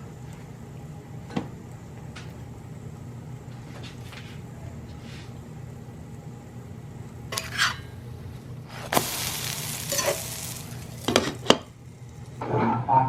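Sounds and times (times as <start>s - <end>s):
dough sizzling on a hot pan: 0.0s - 12.4s
steady low hum: 0.0s - 13.0s
scraping: 8.7s - 12.4s.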